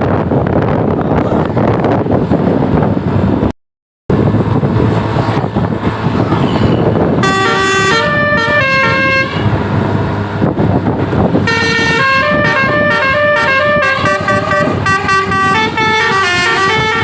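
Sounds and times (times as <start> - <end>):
road noise: 0.0 - 17.0
wind noise: 0.0 - 17.0
bus horn playing a tune: 6.9 - 9.8, 11.3 - 17.0.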